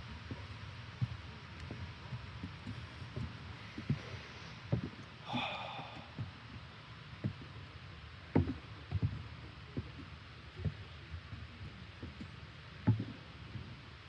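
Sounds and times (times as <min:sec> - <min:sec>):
steady rushing hiss: 0:03.5 - 0:06.5.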